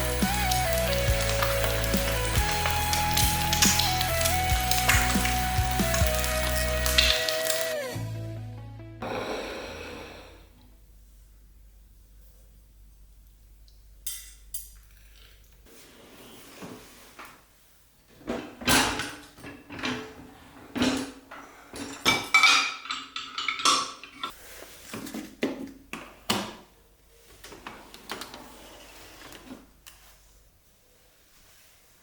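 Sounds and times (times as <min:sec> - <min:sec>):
dishes and cutlery clattering: 0:18.3 - 0:24.4.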